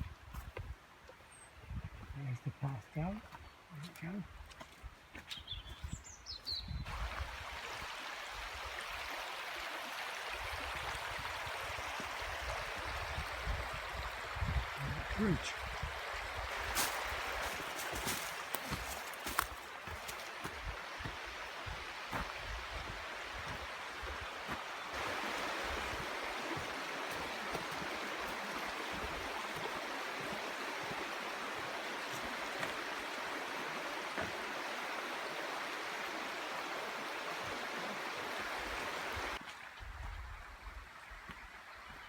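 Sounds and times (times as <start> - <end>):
river water rushing: 6.9 - 39.4
low thumps of footsteps: 16.6 - 24.7.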